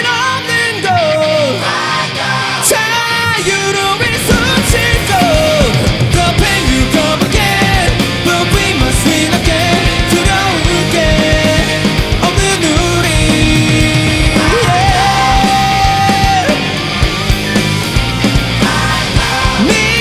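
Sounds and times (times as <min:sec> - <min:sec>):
live punk rock band: 0:00.0 - 0:20.0
sliding lead melody: 0:04.1 - 0:20.0.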